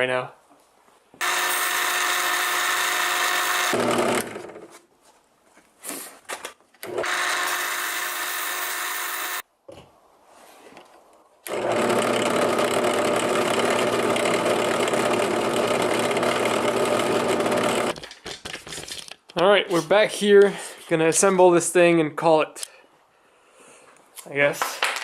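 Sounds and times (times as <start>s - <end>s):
power tool motor sanding wood: 1.2s - 4.8s, 6.8s - 9.4s, 11.5s - 18.0s.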